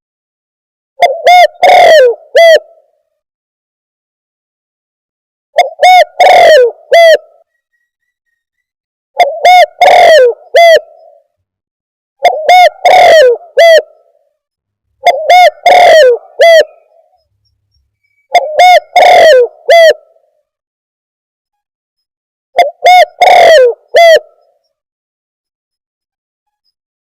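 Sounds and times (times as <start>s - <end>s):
dove cooing: 1.0s - 2.9s, 5.6s - 7.5s, 9.2s - 11.2s, 12.2s - 14.2s, 15.0s - 17.2s, 18.3s - 20.2s, 22.6s - 24.6s.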